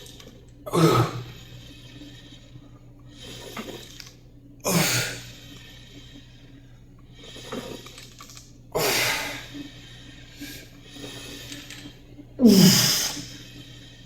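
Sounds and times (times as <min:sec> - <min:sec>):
soft breaths: 0:00.0 - 0:14.0.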